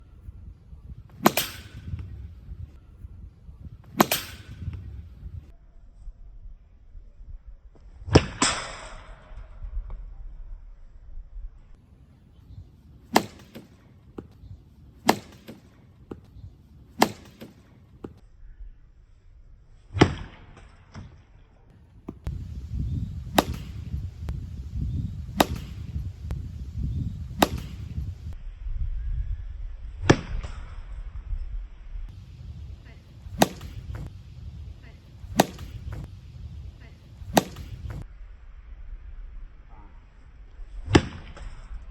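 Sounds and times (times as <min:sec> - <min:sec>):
bat cracking ball off tee: 0:01.1 - 0:02.1, 0:03.9 - 0:04.8, 0:13.1 - 0:13.7, 0:22.2 - 0:28.4, 0:32.1 - 0:36.3, 0:36.9 - 0:38.0.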